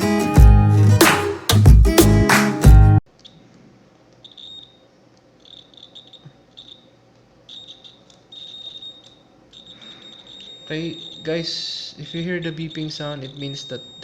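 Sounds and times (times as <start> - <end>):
continuity tester beeping: 4.2 - 4.8, 5.4 - 14.0.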